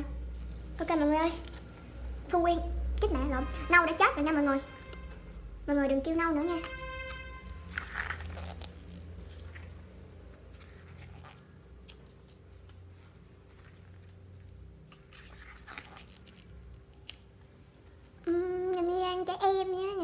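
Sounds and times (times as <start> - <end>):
low steady hum: 0.0 - 20.0
paper pages turning: 6.5 - 18.1.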